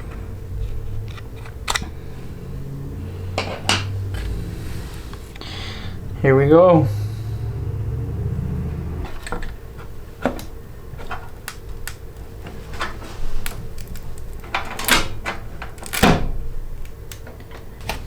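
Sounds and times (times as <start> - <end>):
low hum: 0.0 - 9.9
scraping sounds: 3.0 - 6.0
computer parts clicking and knocking: 10.2 - 18.0.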